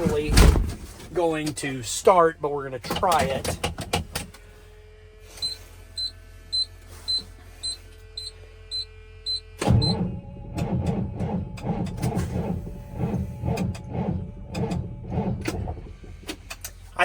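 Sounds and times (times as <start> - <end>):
starter cranking diesel engine: 2.6 - 4.4, 8.7 - 17.0
vehicle warning chime beeping: 5.4 - 10.0.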